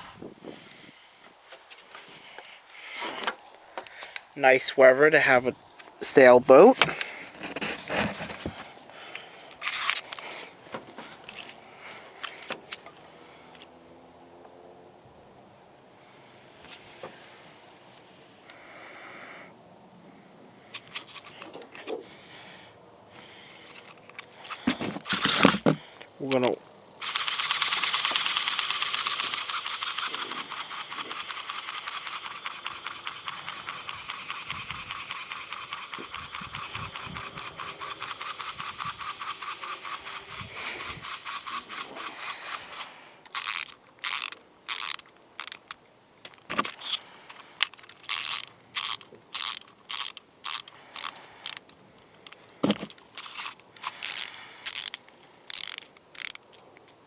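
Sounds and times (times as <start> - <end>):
clockwork motor buzzing clicks: 9.6 - 10.0, 20.7 - 21.4, 23.7 - 45.8, 48.0 - 51.7, 53.2 - 56.6.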